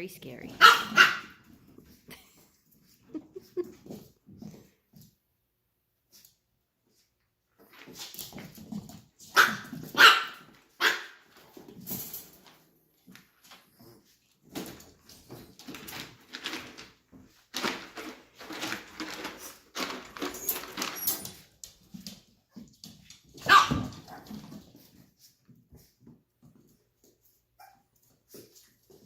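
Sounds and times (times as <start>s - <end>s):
small dogs barking and yapping: 0.5s - 1.6s, 9.2s - 11.2s, 23.2s - 24.8s, 27.6s - 28.4s.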